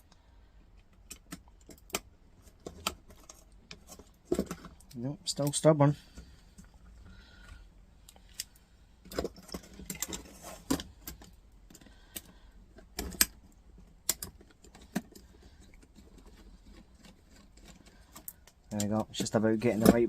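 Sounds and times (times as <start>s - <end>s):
screwdriver clicking and scraping: 8.1s - 19.0s.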